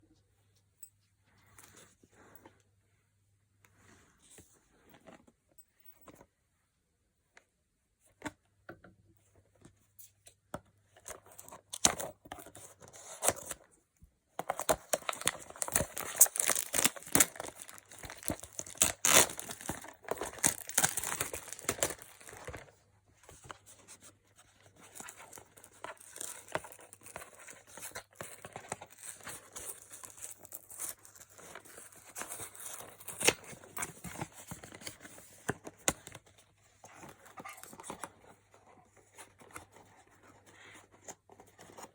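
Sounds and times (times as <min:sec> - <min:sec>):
packaging crinkling: 0:14.4 - 0:22.7
packaging tearing and rustling: 0:14.4 - 0:22.7, 0:24.9 - 0:35.0.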